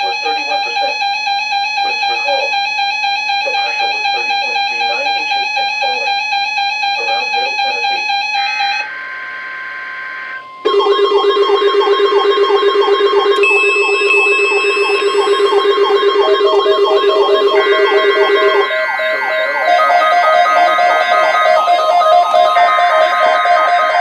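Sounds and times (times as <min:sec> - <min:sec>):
steady electronic tones: 0:00.0 - 0:24.0
warbling electronic alarm: 0:00.0 - 0:24.0
steady higher beep: 0:10.6 - 0:24.0.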